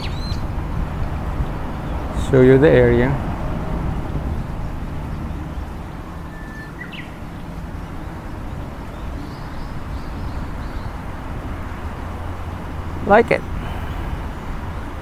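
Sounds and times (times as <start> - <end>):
birds chirping: 0.0 - 3.4, 8.4 - 15.0.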